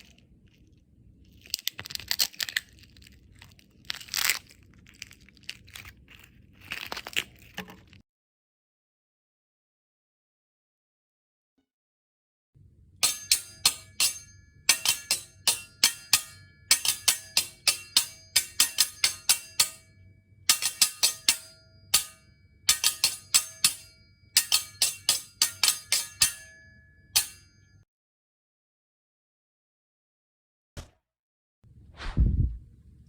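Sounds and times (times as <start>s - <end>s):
metal object struck ringing: 13.0s - 27.8s.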